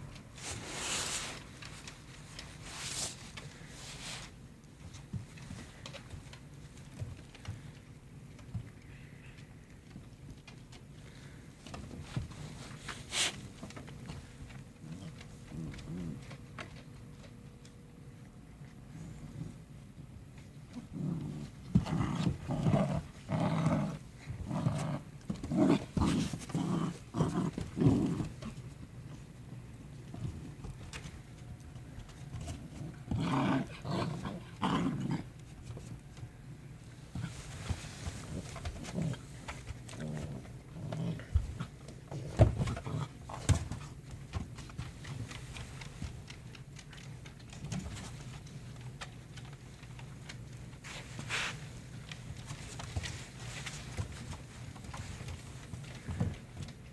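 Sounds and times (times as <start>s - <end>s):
paws scuffling: 0.2s - 56.9s
dogs growling: 11.0s - 16.9s, 20.4s - 29.2s, 32.3s - 35.5s, 37.1s - 44.4s.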